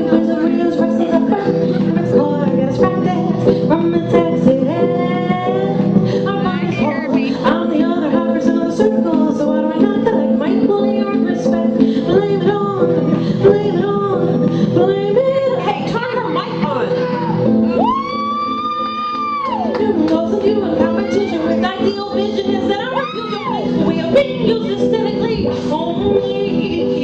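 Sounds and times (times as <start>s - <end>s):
person singing melodically: 0.0s - 18.0s.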